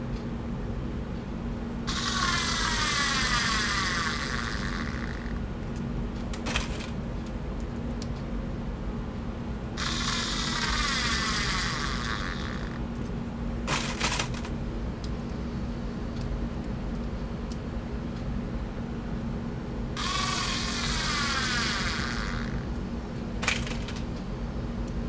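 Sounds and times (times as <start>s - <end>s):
cordless screwdriver motor whirring: 1.9s - 5.4s, 9.8s - 12.8s, 20.0s - 22.7s.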